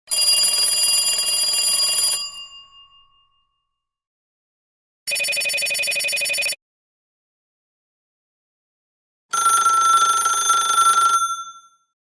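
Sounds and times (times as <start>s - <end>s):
telephone bell ringtone trilling: 0.1s - 3.6s, 5.1s - 6.6s, 9.3s - 12.0s
mobile phone ringtone: 5.1s - 6.6s, 9.3s - 12.0s.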